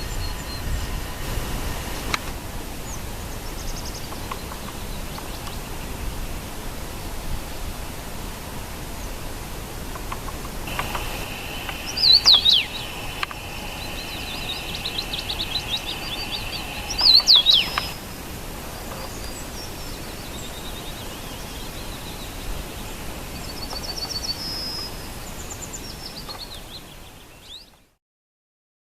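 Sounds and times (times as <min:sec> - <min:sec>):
outdoor background noise: 0:00.0 - 0:28.0
loud whistled bird phrases: 0:10.7 - 0:18.0
rapid bird trills: 0:10.7 - 0:18.0.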